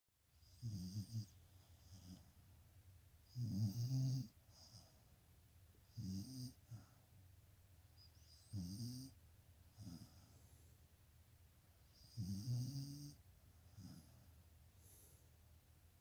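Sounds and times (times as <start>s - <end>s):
dog snoring: 0.4s - 2.3s, 3.2s - 5.0s, 5.9s - 7.0s, 8.2s - 9.2s, 9.8s - 10.3s, 11.8s - 15.1s
soft dog breath: 1.3s - 2.5s, 4.2s - 5.3s, 6.5s - 7.3s, 9.6s - 10.9s, 13.5s - 15.6s.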